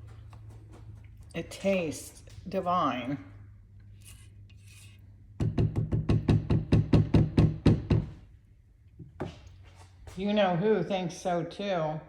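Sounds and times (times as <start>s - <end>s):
spoon scraping a pan: 3.9s - 5.2s.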